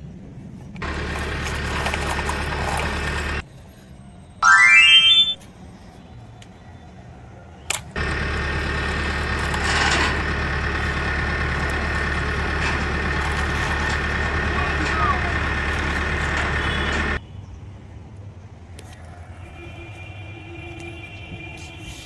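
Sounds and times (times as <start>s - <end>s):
engine idling: 0.8s - 3.4s, 8.0s - 17.2s
short rising tone: 4.4s - 5.4s
click: 7.7s - 7.9s.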